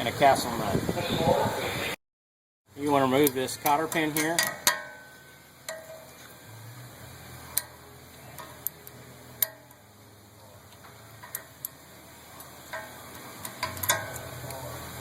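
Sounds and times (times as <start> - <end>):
sharp metal clicks: 3.2 - 5.0, 8.4 - 9.8, 11.2 - 11.8, 12.4 - 14.6.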